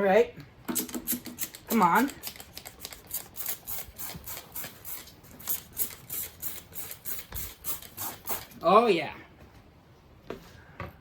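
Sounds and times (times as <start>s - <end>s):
spray bottle squirts: 0.7s - 8.6s.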